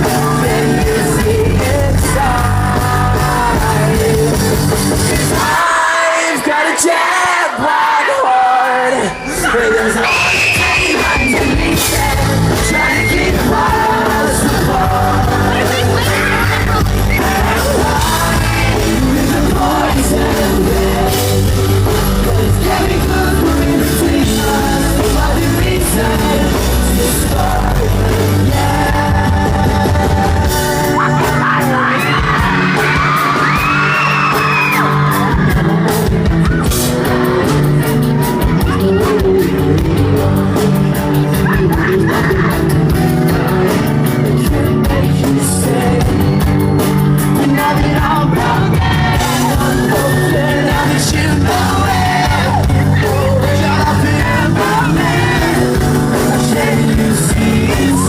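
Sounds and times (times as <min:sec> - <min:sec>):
live pop-rock band with vocals: 0:00.0 - 0:58.0
fans yelling and whooping: 0:05.0 - 0:24.1, 0:27.0 - 0:58.0.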